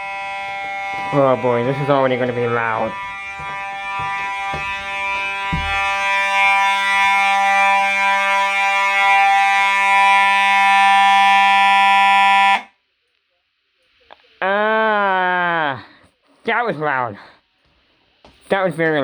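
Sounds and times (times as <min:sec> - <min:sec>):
fire alarm horn buzzing: 0:00.0 - 0:12.7.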